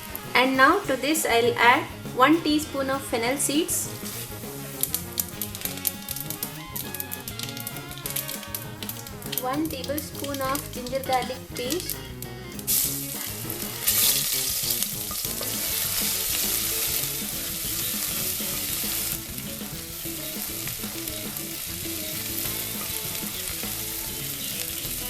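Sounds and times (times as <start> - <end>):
paste sizzling in hot oil: 0.0 - 25.0.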